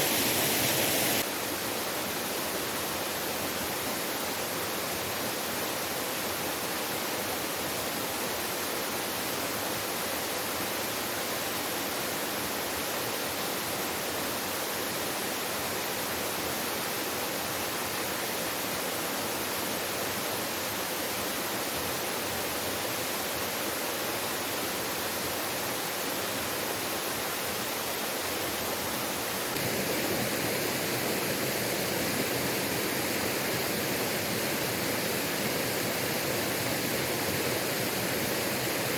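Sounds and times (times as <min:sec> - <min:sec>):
waterfall rushing: 0:00.0 - 0:01.2, 0:29.5 - 0:38.9.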